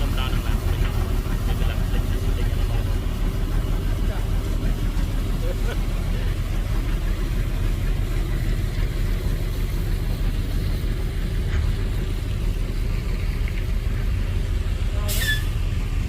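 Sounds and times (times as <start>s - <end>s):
diesel engine rumbling: 0.0s - 16.0s.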